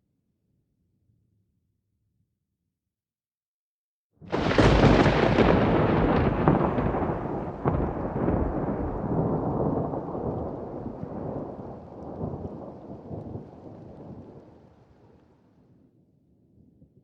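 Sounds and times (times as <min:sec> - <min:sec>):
thunder rumbling and cracking: 0:04.3 - 0:15.2
rain: 0:04.3 - 0:15.6.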